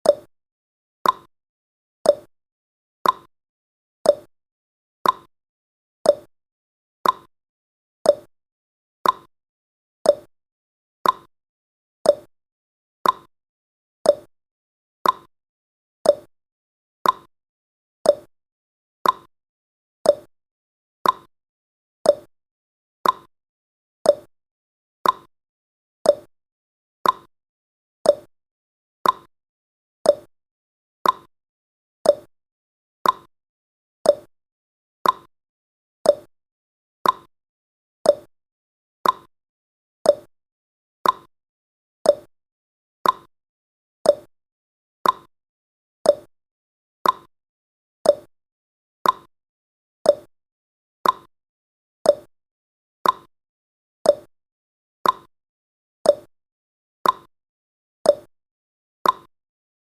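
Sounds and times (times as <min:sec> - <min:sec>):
clock tick-tock: 0:00.0 - 0:00.3, 0:01.0 - 0:01.3, 0:02.1 - 0:02.3, 0:03.0 - 0:03.3, 0:04.1 - 0:04.3, 0:05.0 - 0:05.3, 0:06.1 - 0:06.3, 0:07.0 - 0:07.3, 0:08.1 - 0:08.3, 0:09.0 - 0:09.3, 0:10.1 - 0:10.3, 0:11.0 - 0:11.3, 0:12.1 - 0:12.3, 0:13.0 - 0:13.3, 0:14.0 - 0:14.3, 0:15.0 - 0:15.3, 0:16.0 - 0:16.3, 0:17.0 - 0:17.3, 0:18.1 - 0:18.3, 0:19.0 - 0:19.3, 0:20.0 - 0:20.3, 0:21.0 - 0:21.3, 0:22.0 - 0:22.3, 0:23.0 - 0:23.3, 0:24.0 - 0:24.3, 0:25.0 - 0:25.3, 0:26.0 - 0:26.3, 0:27.0 - 0:27.3, 0:28.0 - 0:28.3, 0:29.0 - 0:29.3, 0:30.0 - 0:30.3, 0:31.0 - 0:31.3, 0:32.0 - 0:32.3, 0:33.0 - 0:33.3, 0:34.0 - 0:34.3, 0:35.0 - 0:35.3, 0:36.0 - 0:36.3, 0:37.0 - 0:37.3, 0:38.0 - 0:38.3, 0:39.0 - 0:39.3, 0:40.0 - 0:40.3, 0:41.0 - 0:41.3, 0:42.0 - 0:42.3, 0:43.0 - 0:43.3, 0:44.0 - 0:44.3, 0:45.0 - 0:45.3, 0:46.0 - 0:46.3, 0:47.0 - 0:47.3, 0:48.0 - 0:48.3, 0:49.0 - 0:49.3, 0:50.1 - 0:50.3, 0:51.0 - 0:51.3, 0:52.1 - 0:52.3, 0:53.0 - 0:53.3, 0:54.1 - 0:54.3, 0:55.0 - 0:55.3, 0:56.1 - 0:56.3, 0:57.0 - 0:57.3, 0:58.1 - 0:58.3, 0:59.0 - 0:59.3.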